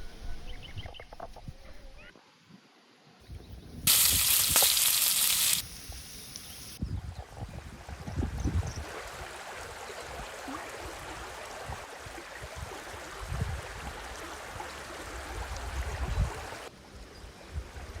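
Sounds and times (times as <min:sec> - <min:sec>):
stream water rushing: 0:08.8 - 0:16.7.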